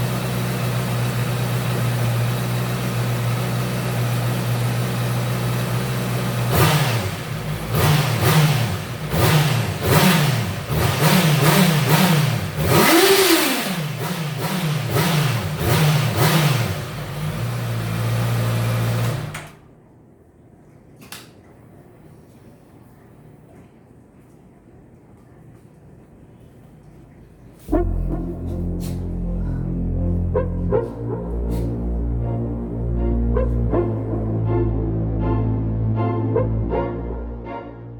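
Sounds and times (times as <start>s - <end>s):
motorcycle engine revving: 0.0s - 19.6s.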